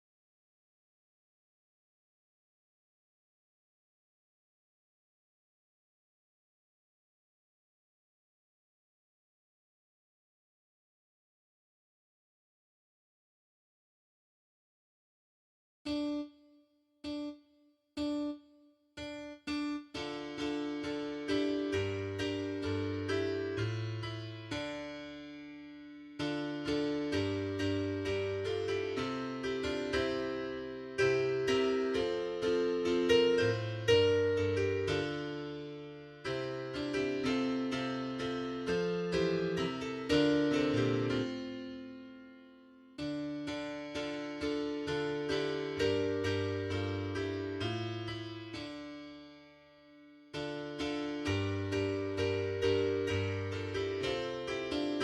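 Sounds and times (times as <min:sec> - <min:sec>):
piano music: 0:19.0 - 0:49.3, 0:50.3 - 0:55.0.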